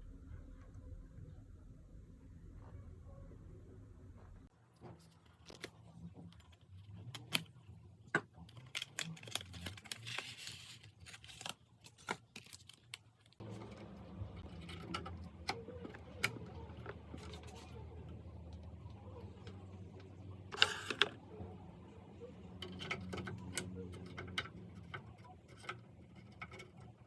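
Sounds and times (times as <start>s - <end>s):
low background hum: 0.0s - 27.0s
computer parts clicking and tapping: 13.4s - 18.6s, 22.5s - 27.0s.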